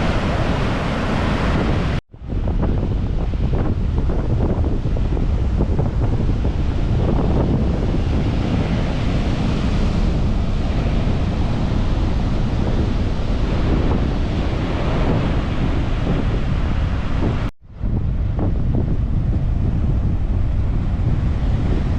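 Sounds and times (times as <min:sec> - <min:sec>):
sea waves breaking on beach: 0:00.0 - 0:17.5
wind buffeting microphone: 0:00.0 - 0:21.9.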